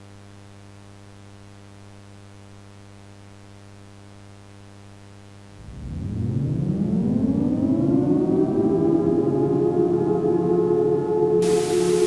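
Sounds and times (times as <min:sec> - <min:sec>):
electrical mains hum: 0:05.6 - 0:12.0.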